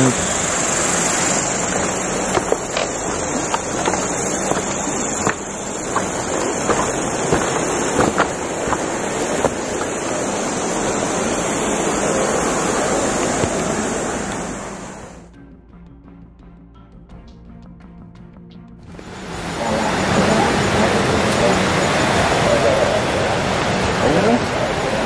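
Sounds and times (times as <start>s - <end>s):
heavy rain: 0.0s - 15.2s, 19.0s - 25.0s
river rushing: 0.0s - 15.2s, 18.9s - 25.0s
high-pitched hum: 0.0s - 25.0s
sharp taps: 2.3s - 10.0s.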